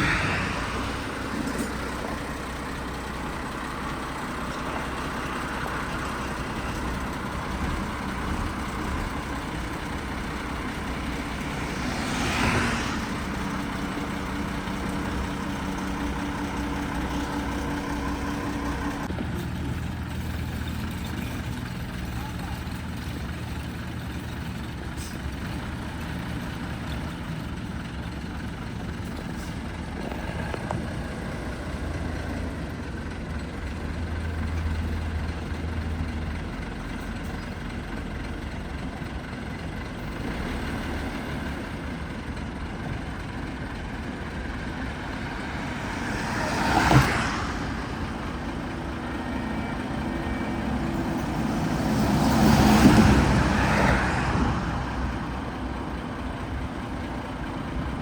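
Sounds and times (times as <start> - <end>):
vehicle passing: 0.0 - 3.0, 8.1 - 19.1, 44.7 - 56.5
diesel truck engine running: 0.0 - 58.0.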